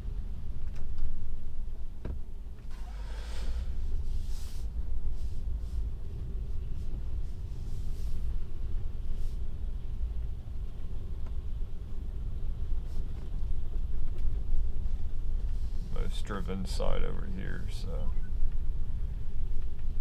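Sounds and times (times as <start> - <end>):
tyre and road noise: 0.0 - 20.0.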